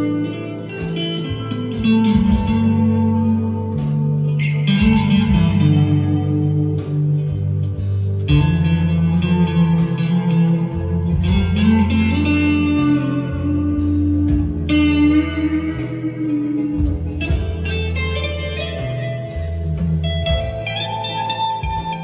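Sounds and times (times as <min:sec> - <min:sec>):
backing track with bass line: 0:00.0 - 0:22.0
clean electric guitar notes: 0:00.0 - 0:22.0.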